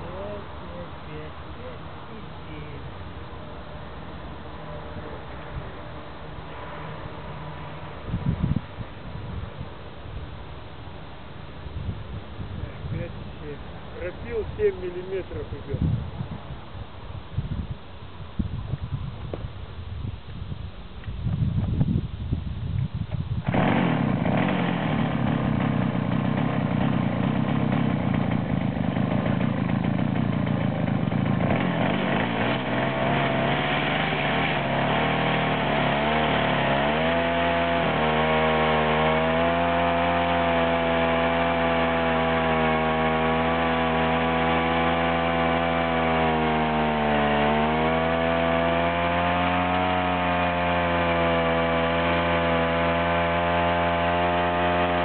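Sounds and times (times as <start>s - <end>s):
chainsaw cutting log: 23.4s - 55.0s.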